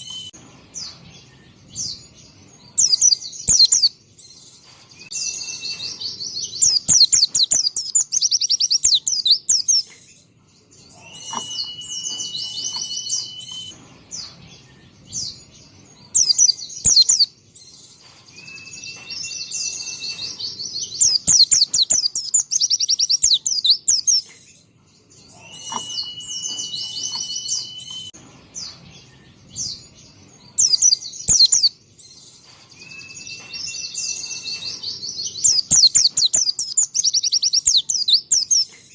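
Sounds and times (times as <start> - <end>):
white-eye bird singing: 0.0 - 38.9.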